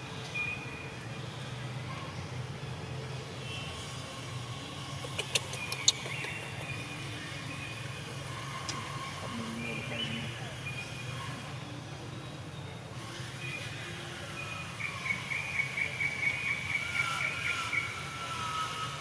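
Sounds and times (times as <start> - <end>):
low engine hum: 4.1 - 15.3.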